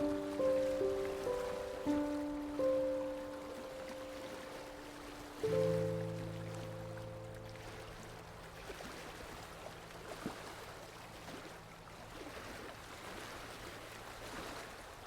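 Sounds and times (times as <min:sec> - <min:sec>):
small waves lapping at shore: 0:00.0 - 0:15.0
small water splashes: 0:03.2 - 0:15.0.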